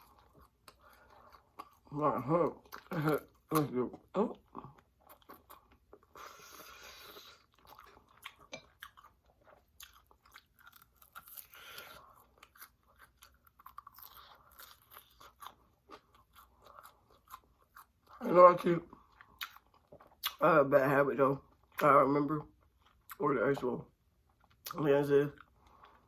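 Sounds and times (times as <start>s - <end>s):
chewing crunchy food: 0.0s - 20.5s.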